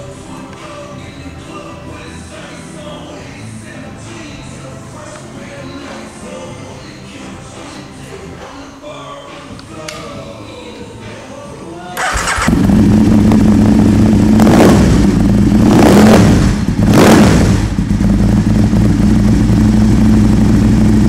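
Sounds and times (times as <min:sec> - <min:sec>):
motorcycle engine revving and idling: 0:12.0 - 0:21.0.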